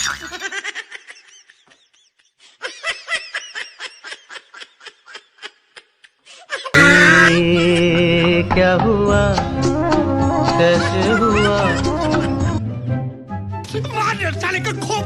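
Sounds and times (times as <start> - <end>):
high-pitched giggling: 3.8 - 8.0.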